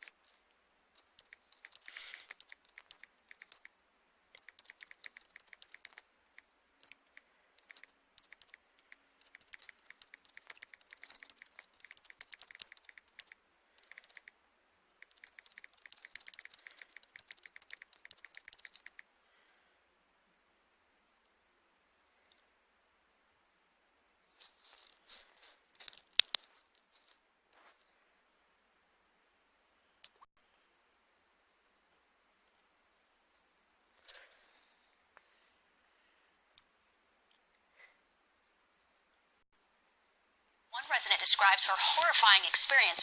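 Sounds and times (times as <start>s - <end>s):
keyboard typing clicks: 1.0s - 3.7s, 4.3s - 14.4s, 15.0s - 19.0s.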